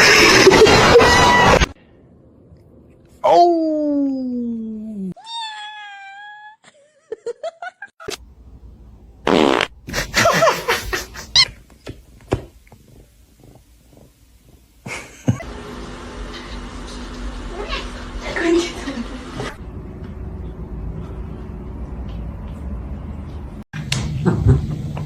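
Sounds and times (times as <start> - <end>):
cat meowing: 5.2 - 6.6.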